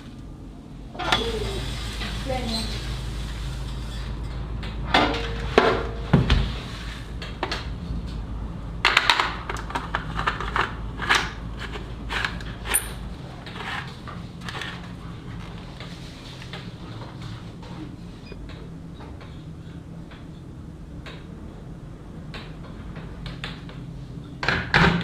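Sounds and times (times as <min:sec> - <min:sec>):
low steady hum: 0:00.0 - 0:25.0
hard objects clattering: 0:08.8 - 0:16.7.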